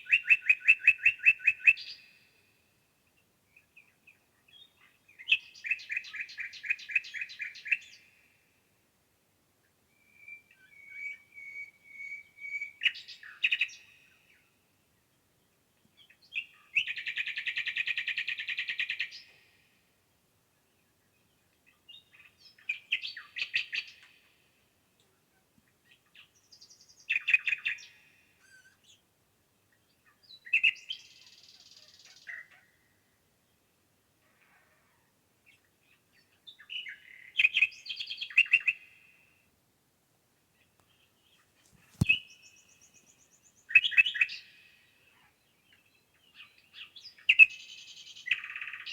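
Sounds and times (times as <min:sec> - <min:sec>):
songbird trilling: 0:41.8 - 0:43.0.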